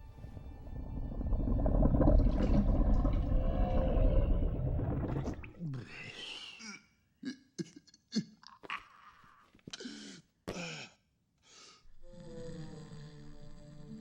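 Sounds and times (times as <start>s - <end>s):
soft music: 11.9s - 14.0s.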